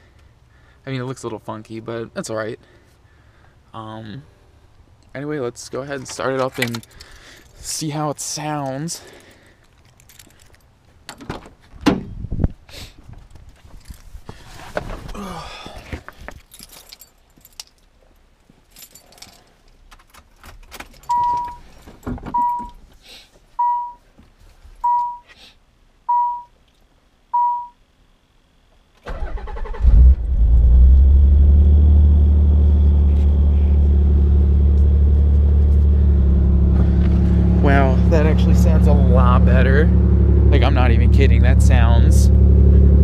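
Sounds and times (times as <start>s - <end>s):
keys rustling: 6.0s - 11.3s, 13.3s - 14.2s, 16.0s - 22.8s
car warning chime: 21.1s - 21.6s, 22.4s - 22.8s, 23.6s - 24.0s, 24.8s - 25.3s, 26.1s - 26.5s, 27.4s - 27.8s
car engine cranking and idling: 29.0s - 43.0s.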